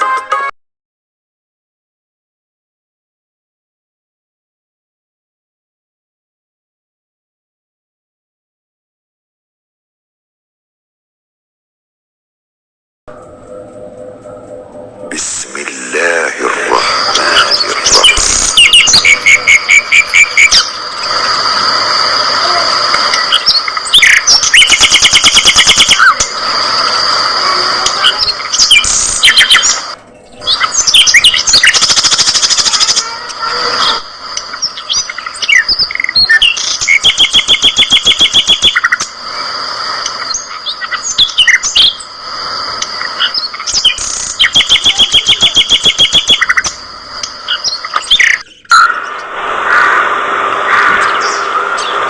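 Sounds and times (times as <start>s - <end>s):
budgerigars chattering: 16.0s - 20.8s, 28.1s - 33.0s, 43.0s - 46.8s
fast bird trill: 17.2s - 20.8s, 23.3s - 26.2s, 28.1s - 29.8s, 30.4s - 33.0s, 43.2s - 46.8s.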